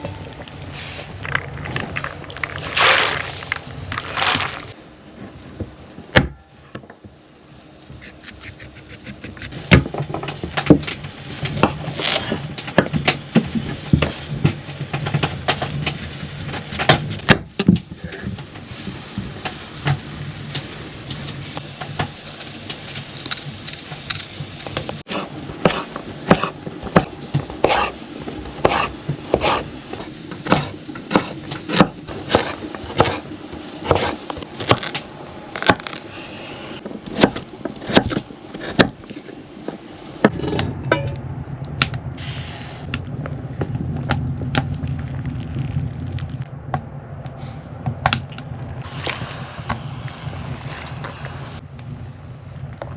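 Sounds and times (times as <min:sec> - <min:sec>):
low hum: 0:24.9 - 0:52.9.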